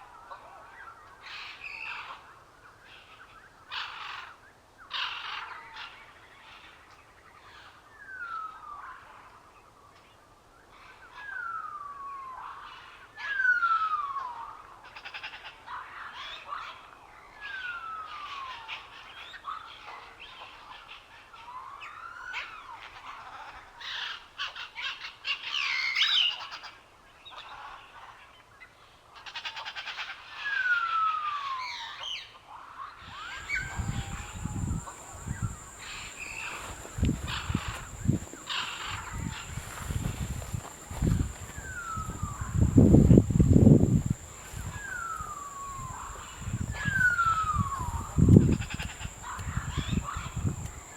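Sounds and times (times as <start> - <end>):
birds chirping and trilling: 33.1 - 50.9.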